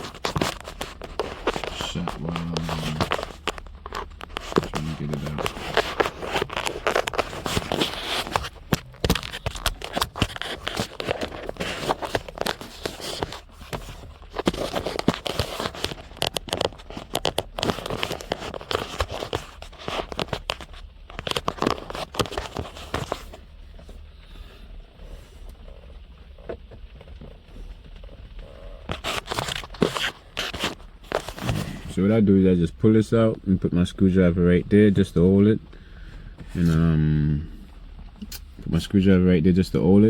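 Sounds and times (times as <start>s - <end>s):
plastic clicking and scraping: 0.0s - 24.0s, 25.4s - 32.2s.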